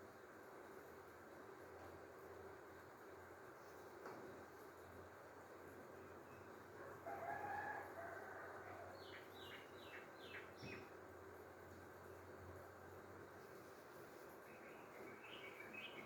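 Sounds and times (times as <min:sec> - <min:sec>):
faint rooster crowing: 0:06.3 - 0:10.7.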